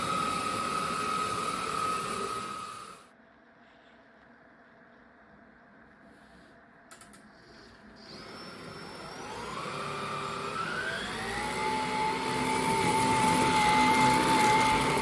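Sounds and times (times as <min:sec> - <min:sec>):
vacuum cleaner motor whine: 0:00.0 - 0:03.1, 0:08.0 - 0:15.0.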